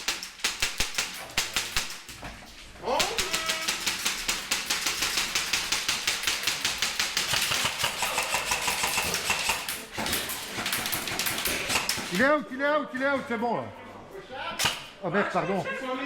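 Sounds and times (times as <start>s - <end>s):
airsoft gun firing full-auto: 3.0s - 12.1s.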